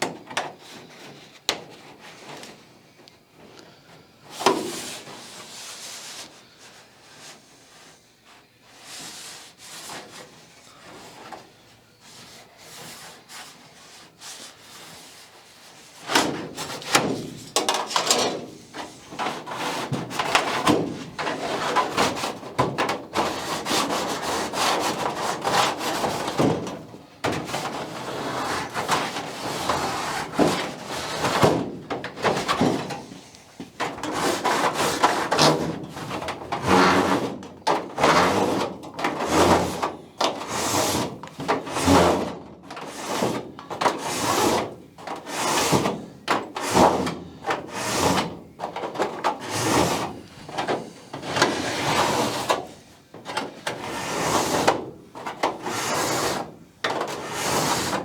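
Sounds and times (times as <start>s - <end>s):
scraping on metal: 12.0s - 58.0s.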